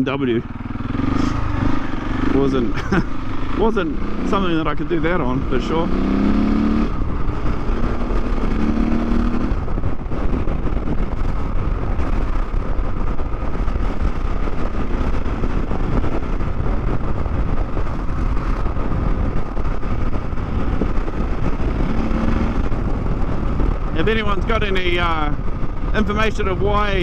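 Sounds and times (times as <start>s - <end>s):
motorcycle engine idling: 0.0s - 21.6s.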